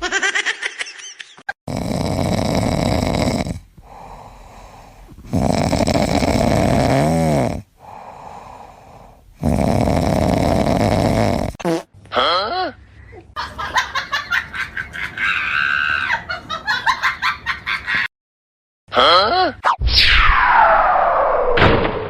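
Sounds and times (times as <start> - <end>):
loud snoring: 1.7 - 11.9
quiet breathing: 3.5 - 5.3, 7.6 - 9.4.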